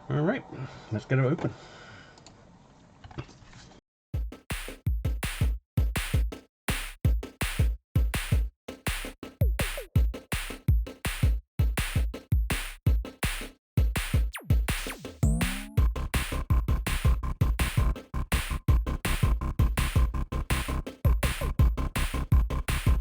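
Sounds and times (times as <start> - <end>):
electronic music with drum-machine beat: 4.2 - 23.0.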